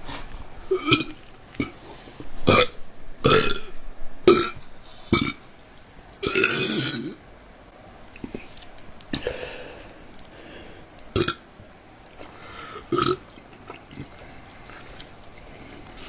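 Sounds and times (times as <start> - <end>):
woman burping: 2.4 - 4.6.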